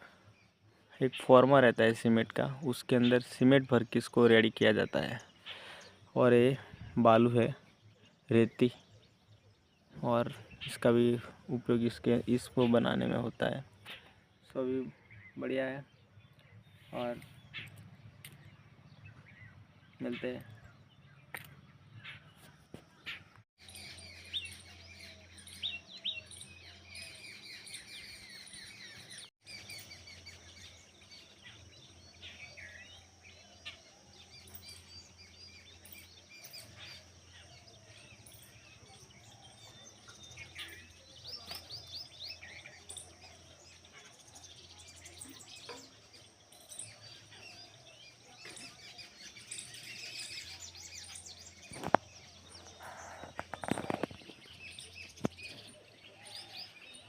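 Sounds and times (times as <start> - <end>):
small birds chirping: 0.0 - 57.0.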